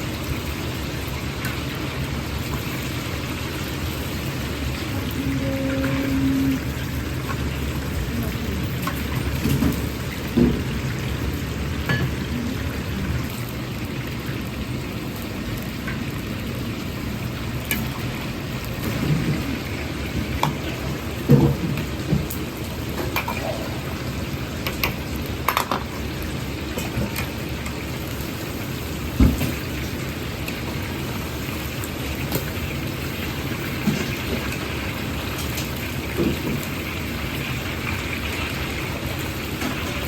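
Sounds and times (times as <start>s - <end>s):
deep-frying oil crackling hiss: 0.0s - 40.0s
kitchen utensils clinking: 11.8s - 12.3s.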